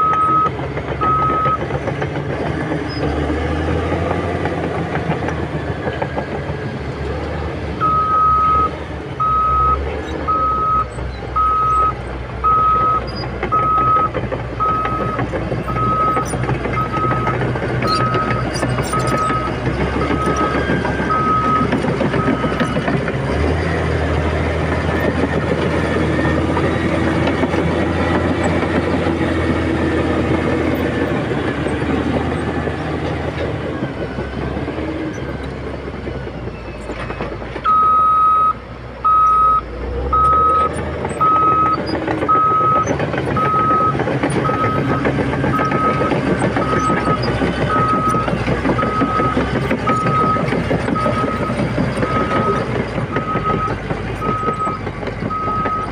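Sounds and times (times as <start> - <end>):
reversing alarm beeping: 0.0 - 1.6, 7.8 - 22.9, 37.6 - 55.9
heavy machinery engine running: 0.0 - 55.9.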